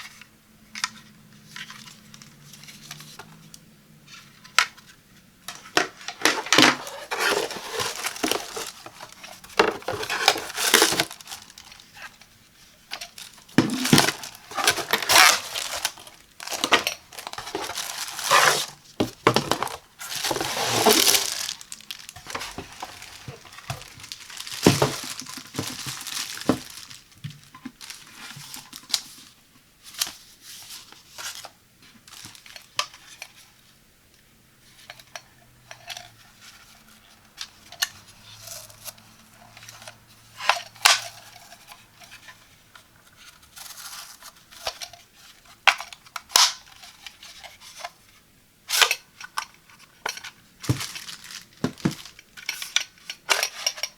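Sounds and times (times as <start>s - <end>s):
packaging crinkling and tearing: 5.6s - 12.2s, 12.9s - 29.3s, 31.2s - 32.8s, 48.7s - 53.9s.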